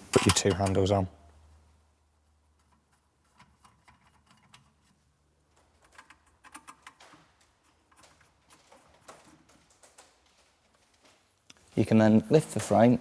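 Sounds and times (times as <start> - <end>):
handles clicking on metal frame: 0.0 - 1.0, 2.8 - 11.7.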